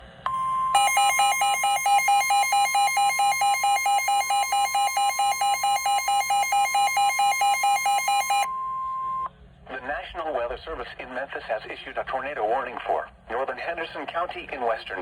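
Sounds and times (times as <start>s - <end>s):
steady warning tone: 0.3s - 9.3s
rapid alternating alarm beep: 0.4s - 9.3s.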